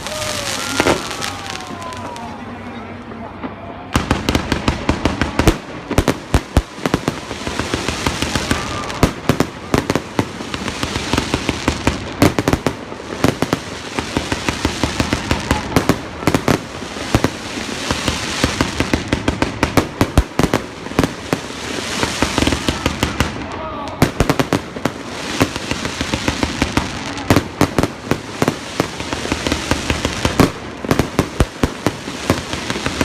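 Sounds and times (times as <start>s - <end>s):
fireworks bangs and crackling: 0.0s - 33.0s.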